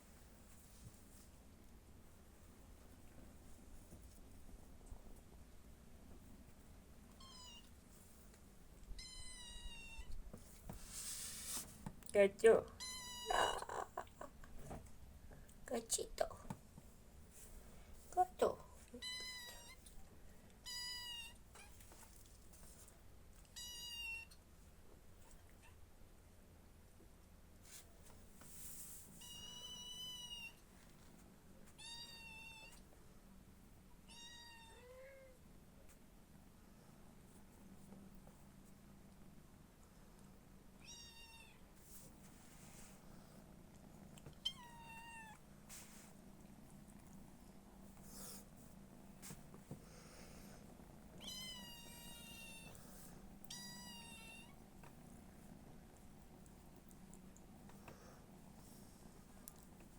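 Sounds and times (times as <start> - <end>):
soft rustle: 0.0 - 13.3, 16.2 - 23.6, 27.5 - 31.8, 41.6 - 59.9
cat meowing: 44.4 - 45.4, 51.2 - 52.8, 53.5 - 54.6
cat meowing faintly: 44.4 - 45.4.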